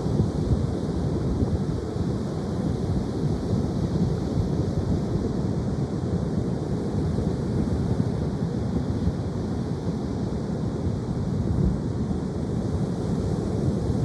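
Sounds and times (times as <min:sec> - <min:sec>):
wind rumbling on microphone: 0:00.0 - 0:14.0.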